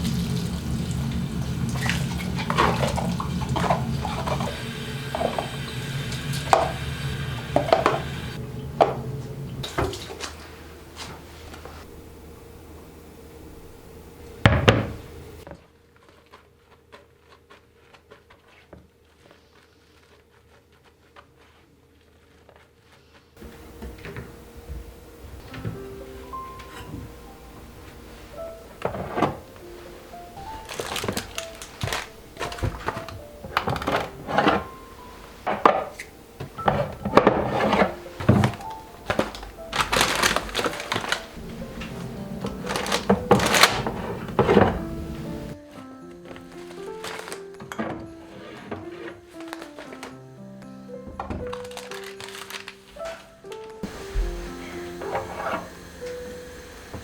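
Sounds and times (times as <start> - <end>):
soft background music: 0.0 - 15.5, 23.4 - 57.0
kitchen items clicking and tapping: 30.6 - 34.7, 35.5 - 45.6.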